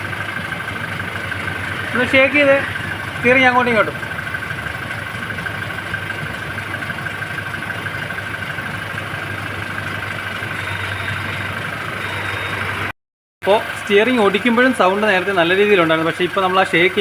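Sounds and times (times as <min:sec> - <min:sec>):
car engine idling: 0:00.0 - 0:17.0
constant high tone: 0:00.9 - 0:06.6, 0:10.4 - 0:12.9.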